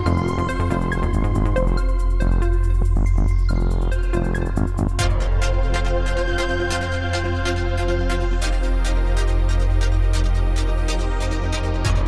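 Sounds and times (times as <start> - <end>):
electronic music with heavy bass: 0.0 - 12.0.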